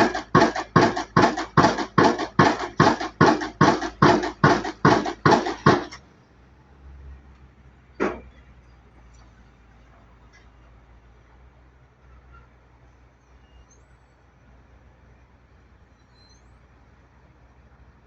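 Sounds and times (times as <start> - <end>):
pile driver hammer blows: 0.0 - 6.0.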